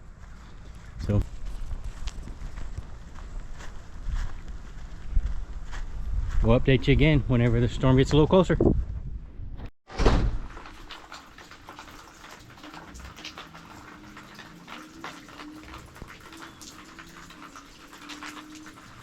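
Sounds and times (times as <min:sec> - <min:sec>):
sharp knock: 0:09.9 - 0:10.5
light rain hissing: 0:10.6 - 0:19.0
water drips ticking: 0:10.6 - 0:19.0.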